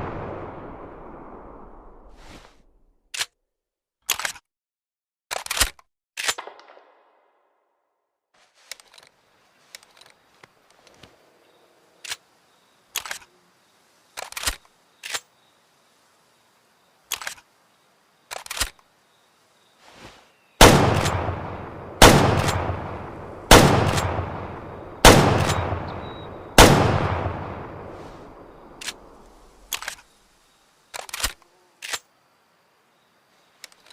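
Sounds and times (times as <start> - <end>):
rifle action clicks: 12.9 - 13.3, 28.7 - 30.0
rifle shots echoing: 20.6 - 29.2.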